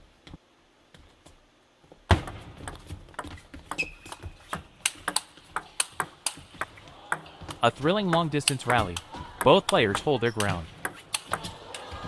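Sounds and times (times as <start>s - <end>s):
table tennis ball clicking: 2.7s - 7.2s, 8.1s - 11.5s.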